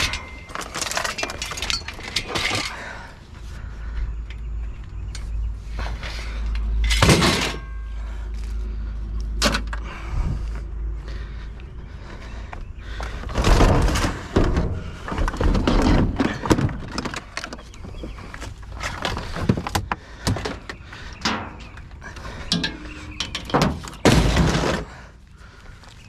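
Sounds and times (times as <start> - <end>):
scrap clattering and knocking: 0.0 - 3.0, 13.1 - 25.1.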